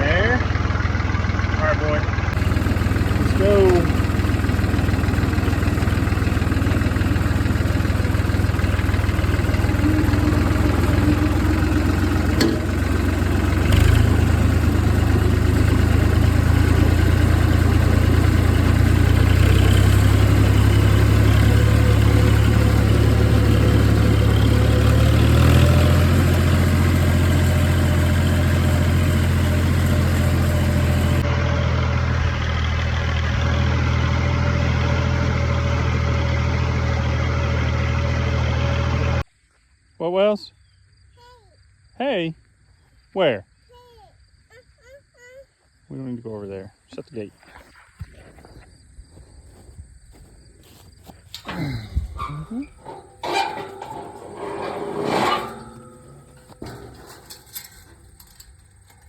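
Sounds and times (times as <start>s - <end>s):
tractor engine running: 0.0s - 39.3s, 48.1s - 59.0s
sharp clicks or clanks: 51.3s - 59.0s.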